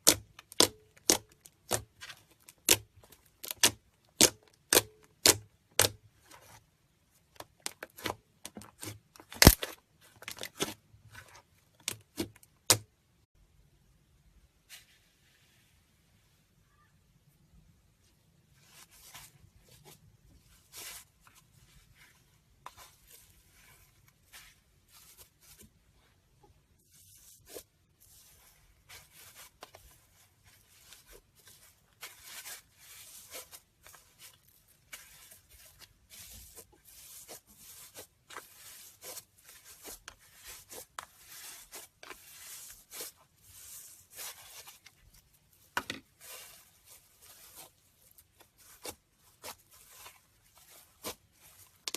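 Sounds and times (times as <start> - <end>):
slime crackling and snapping: 7.6 - 10.7.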